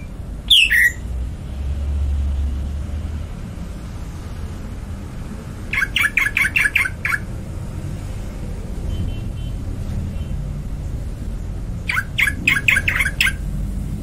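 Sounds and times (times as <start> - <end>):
bird chirping: 0.0 - 1.1, 5.7 - 7.3, 11.9 - 13.4.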